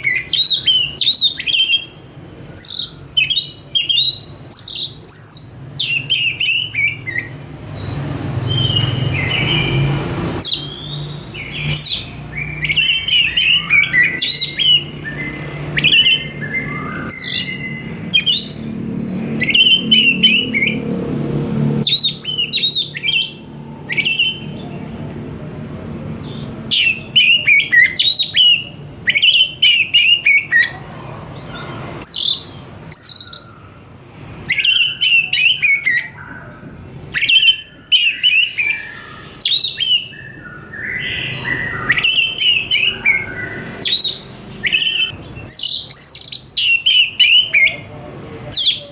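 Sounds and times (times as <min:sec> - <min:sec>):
bird singing chirps and trills: 0:00.0 - 0:48.9.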